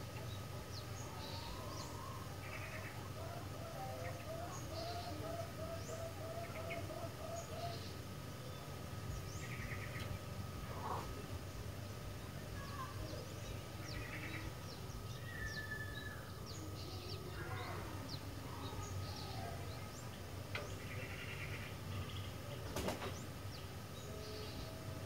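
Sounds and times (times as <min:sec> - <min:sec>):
steady low hum: 0:00.0 - 0:25.0
bulbuls calling: 0:00.6 - 0:24.7
high falling bird chirps: 0:13.9 - 0:17.3.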